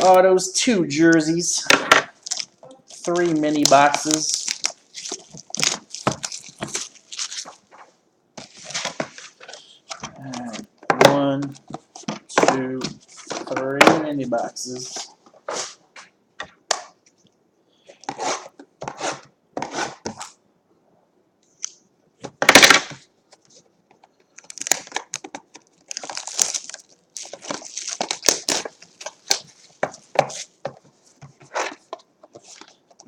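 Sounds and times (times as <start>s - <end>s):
packaging tearing and crinkling: 2.2s - 7.7s, 24.4s - 30.4s.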